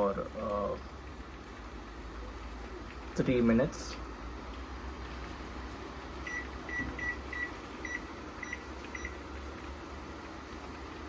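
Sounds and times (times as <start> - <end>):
microwave keypad beeping: 6.2 - 9.2.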